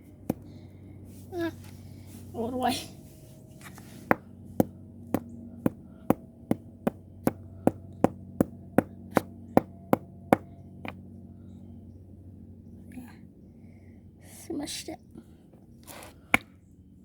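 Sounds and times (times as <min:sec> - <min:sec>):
faint steady hum: 0:00.0 - 0:17.0
rock knocking on concrete: 0:04.0 - 0:11.0.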